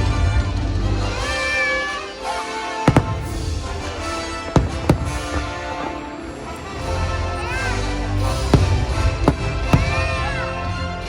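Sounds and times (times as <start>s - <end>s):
soundtrack music with held notes: 0.0s - 11.0s
firework bang: 2.9s - 7.0s, 8.4s - 10.3s.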